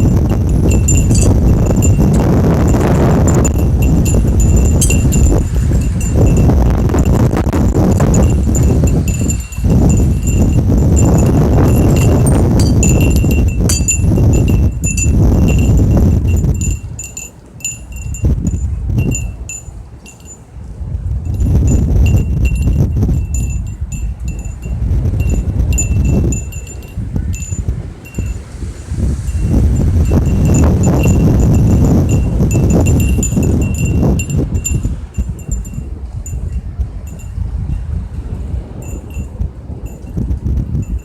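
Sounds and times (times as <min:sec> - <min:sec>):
thunder rumbling: 0:00.0 - 0:16.7
wind chimes tinkling: 0:00.0 - 0:20.5, 0:21.3 - 0:28.5, 0:29.2 - 0:41.0.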